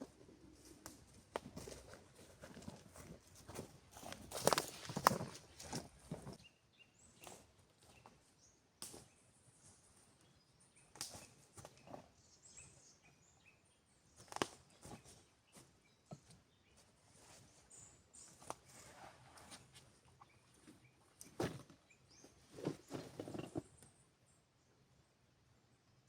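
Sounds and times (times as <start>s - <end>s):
soft crunches and knocks: 1.4s - 6.4s, 20.6s - 23.7s.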